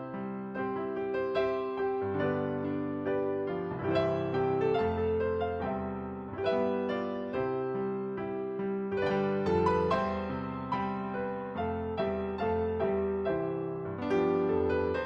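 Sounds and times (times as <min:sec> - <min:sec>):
slow gentle piano music: 0:00.0 - 0:15.0.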